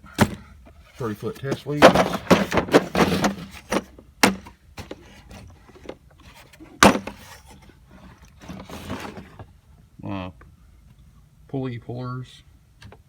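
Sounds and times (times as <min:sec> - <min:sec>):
tools rattling in a cart: 0:01.0 - 0:03.9.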